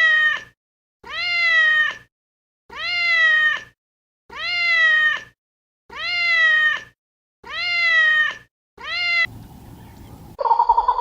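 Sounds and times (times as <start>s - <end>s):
cat meowing: 0.0s - 2.1s, 2.7s - 9.3s
warbling call: 9.4s - 11.0s.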